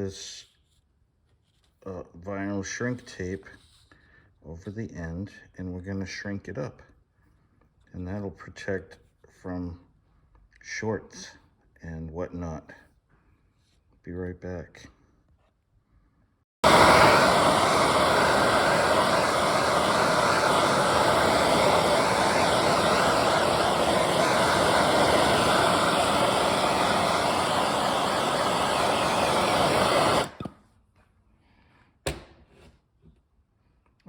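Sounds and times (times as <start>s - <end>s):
gas torch flame rushing: 16.6s - 30.6s.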